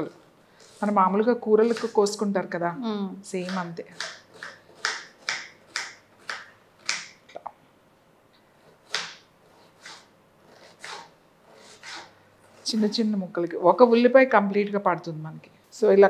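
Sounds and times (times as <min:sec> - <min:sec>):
knife chopping onion: 0:01.6 - 0:02.2, 0:03.3 - 0:07.2, 0:08.6 - 0:12.7.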